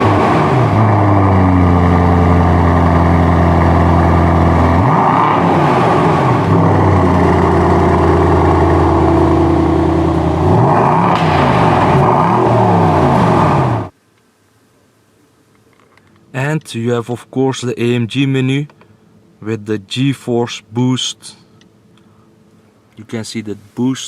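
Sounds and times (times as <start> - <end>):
car engine running under load: 0.0 - 14.0.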